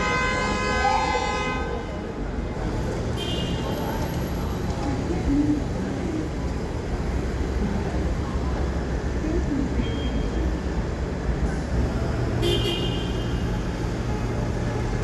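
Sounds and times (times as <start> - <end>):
city traffic rumbling: 0.0 - 15.0
car horn toot: 12.4 - 13.4.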